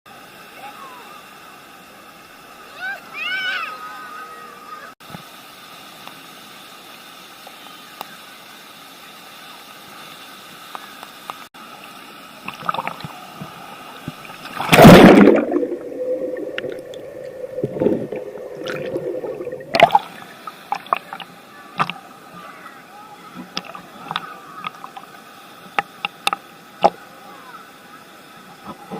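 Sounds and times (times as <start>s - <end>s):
water splashing: 12.3s - 27.6s
muffled underwater gurgling: 12.5s - 25.1s
steady low hum: 12.8s - 26.7s.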